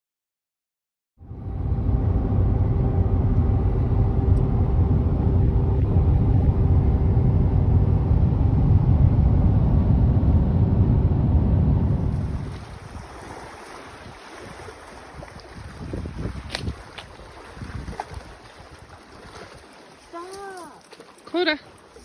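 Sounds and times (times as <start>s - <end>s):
faint steady hum: 1.2s - 15.3s
wind buffeting microphone: 1.3s - 20.4s.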